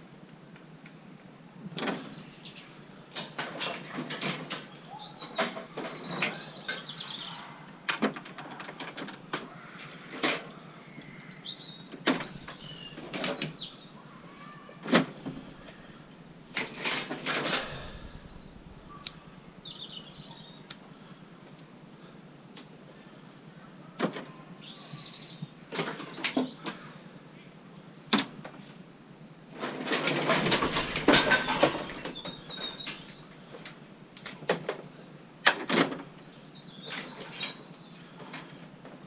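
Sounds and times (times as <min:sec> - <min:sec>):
birds chirping: 0:01.9 - 0:21.2, 0:22.9 - 0:27.5, 0:30.2 - 0:33.7, 0:36.0 - 0:38.4
scrap metal clattering: 0:15.1 - 0:19.5, 0:29.6 - 0:33.2.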